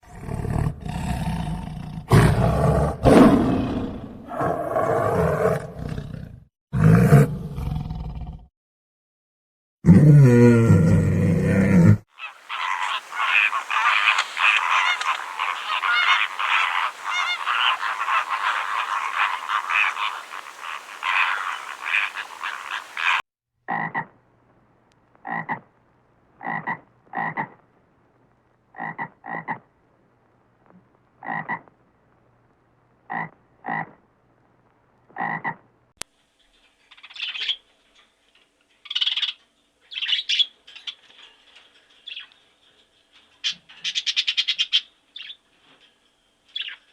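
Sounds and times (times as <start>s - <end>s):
frogs croaking: 12.1s - 24.2s, 25.2s - 25.7s, 26.4s - 27.7s, 28.7s - 29.7s, 31.2s - 31.8s, 33.0s - 34.1s, 35.1s - 35.7s.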